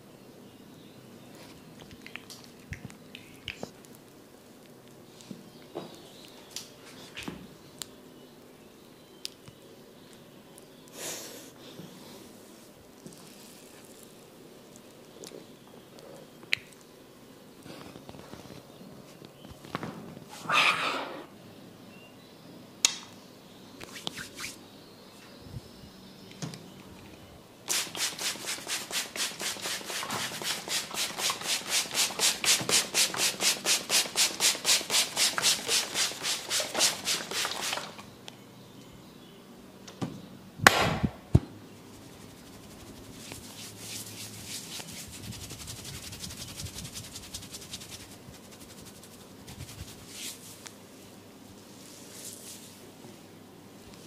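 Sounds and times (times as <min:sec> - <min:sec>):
hands rubbing oiled skin: 0:23.8 - 0:24.6, 0:27.7 - 0:38.0, 0:41.8 - 0:50.7.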